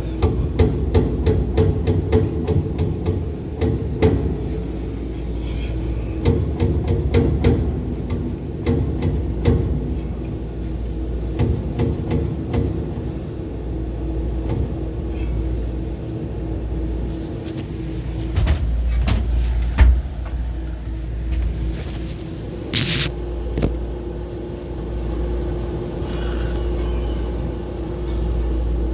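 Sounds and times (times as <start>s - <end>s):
fan bearings clicking and knocking: 0.0s - 4.5s, 6.2s - 13.1s
fan motors humming: 0.0s - 28.9s.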